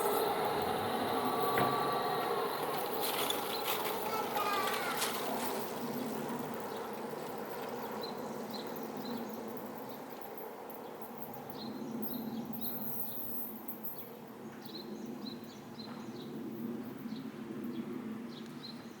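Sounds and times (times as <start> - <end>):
distant traffic hum: 0.0 - 11.7.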